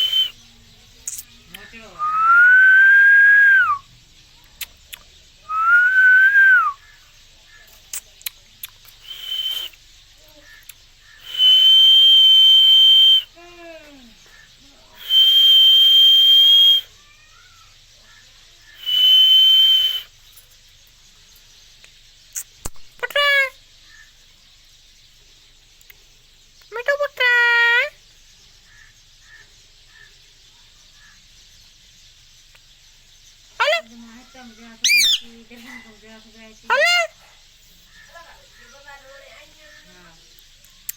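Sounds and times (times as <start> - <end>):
loud whistles: 0.0 - 0.4, 2.0 - 3.9, 5.5 - 6.8, 9.0 - 9.8, 11.2 - 13.3, 15.0 - 16.9, 18.8 - 20.1, 34.8 - 35.3
short falling chirps: 34.8 - 35.3.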